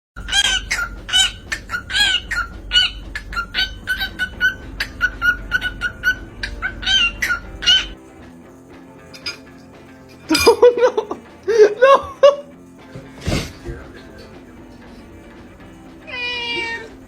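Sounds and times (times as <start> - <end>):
bird squawking: 0.2 - 8.0
low steady hum: 0.2 - 8.3.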